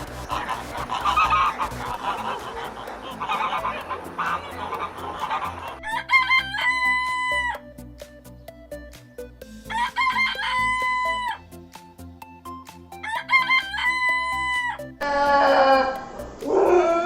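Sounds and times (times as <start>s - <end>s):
rooster crowing: 5.8s - 7.6s, 9.7s - 11.4s, 13.0s - 17.0s
lower animal call: 15.0s - 17.0s.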